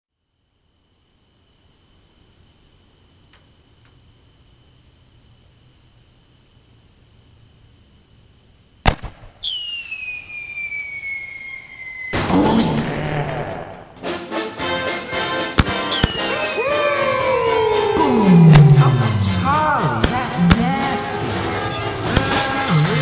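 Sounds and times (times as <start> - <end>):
crickets chirping: 0.1 - 15.2
sharp crack: 8.9 - 10.0, 11.5 - 14.2, 17.7 - 23.0
loud firework burst: 8.9 - 14.1, 15.7 - 23.0
firework whistle falling in pitch: 9.4 - 12.2, 15.7 - 20.8.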